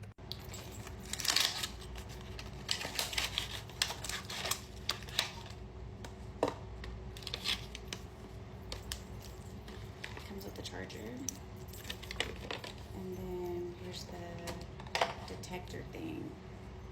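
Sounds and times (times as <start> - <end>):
plastic packaging clicks and rattles: 0.2 - 10.5, 11.2 - 12.9.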